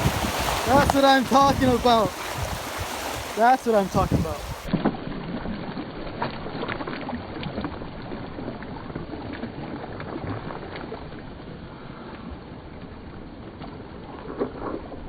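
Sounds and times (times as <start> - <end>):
wind buffeting microphone: 0.0 - 4.7
water at shoreline: 0.0 - 15.0
wind: 0.0 - 15.0.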